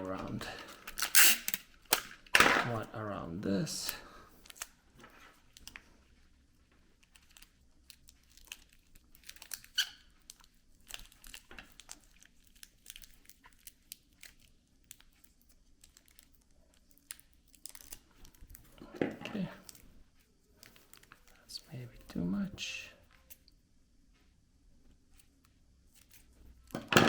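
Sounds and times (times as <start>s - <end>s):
plastic wrapping crinkling: 4.4s - 21.6s.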